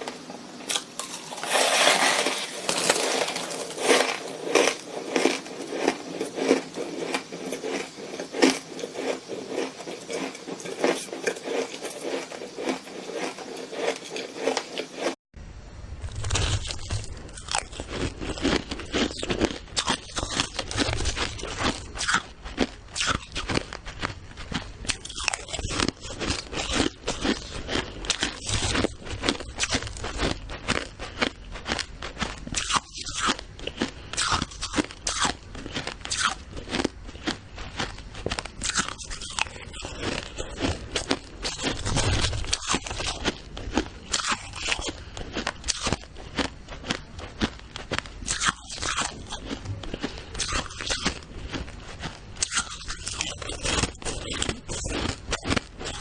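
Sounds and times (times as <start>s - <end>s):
shaved ice crunching: 0.7s - 15.2s.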